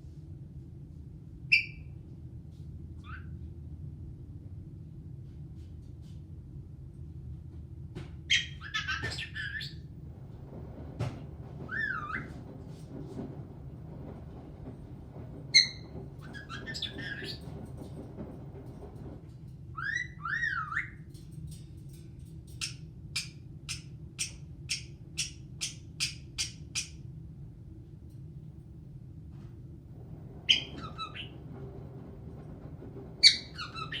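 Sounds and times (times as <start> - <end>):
parrot squeaking and whistling: 1.5 - 1.8, 8.3 - 9.8, 15.5 - 17.4, 19.8 - 21.0, 30.5 - 31.4, 33.2 - 34.0
parrot chirps: 30.5 - 31.3.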